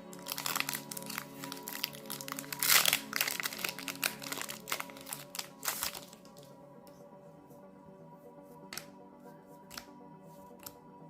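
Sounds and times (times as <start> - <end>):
wrapper crinkling: 0.0 - 6.5
background music: 0.0 - 11.0.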